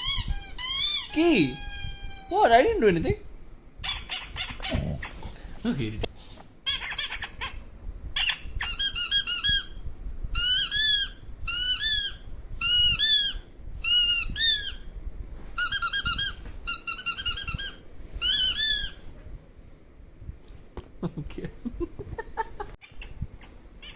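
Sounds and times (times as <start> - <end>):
high-pitched squeaks: 0.0 - 2.4, 15.6 - 19.0.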